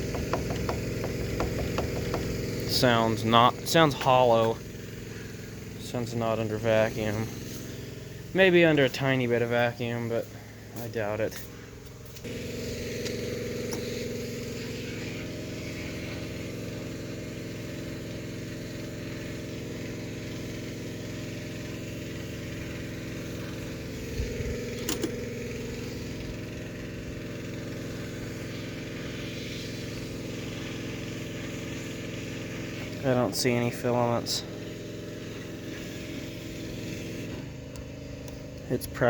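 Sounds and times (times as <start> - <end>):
small knocks: 0.0 - 2.4.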